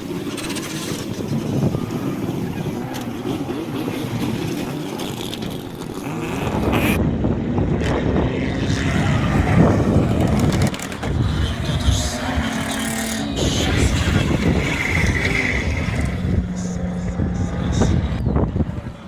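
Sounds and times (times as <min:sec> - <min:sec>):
car engine revving hard: 0:08.0 - 0:18.2.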